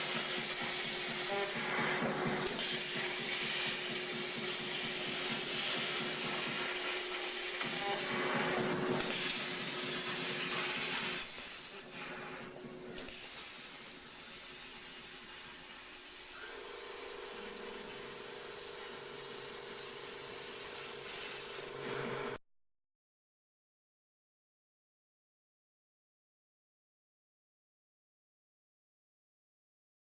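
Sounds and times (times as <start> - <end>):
plasma torch hissing: 0.0 - 22.4.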